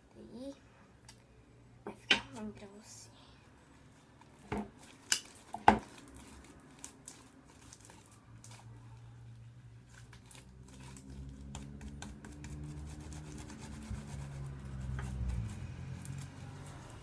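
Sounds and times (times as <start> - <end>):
slime sticky rubbing and scraping: 9.9 - 17.0.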